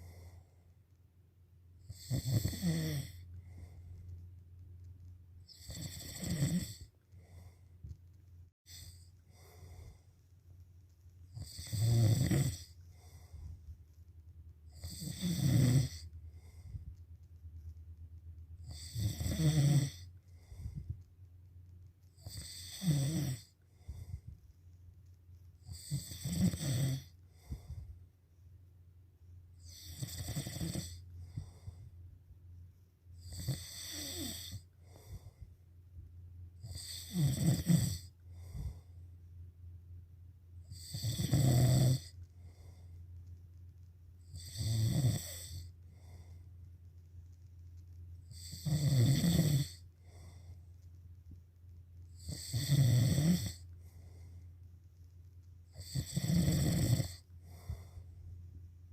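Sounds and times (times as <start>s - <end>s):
steady low hum: 0.0s - 58.9s
person snoring: 1.9s - 3.7s, 5.5s - 6.9s, 11.4s - 13.3s, 14.7s - 16.6s, 18.6s - 20.6s, 22.2s - 24.1s, 25.6s - 27.7s, 29.6s - 31.7s, 33.2s - 35.2s, 36.6s - 38.8s, 40.7s - 42.1s, 44.3s - 45.7s, 48.3s - 50.3s, 52.2s - 53.6s, 55.7s - 58.0s.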